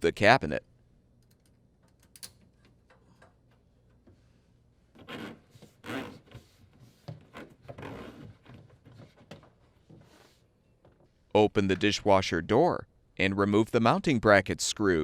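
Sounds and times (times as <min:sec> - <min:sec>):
hose rubbing and scraping: 0:05.0 - 0:09.2.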